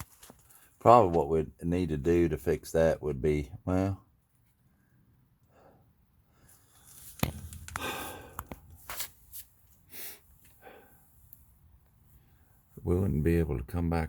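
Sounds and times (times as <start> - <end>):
breathy noises: 5.5 - 8.8
short rustling: 6.5 - 10.5.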